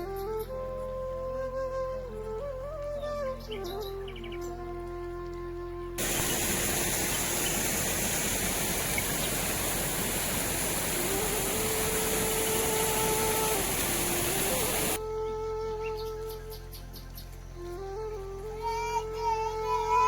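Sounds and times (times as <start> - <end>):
soft flute music: 0.0 - 7.4, 10.8 - 20.0
rushing water: 6.0 - 15.0.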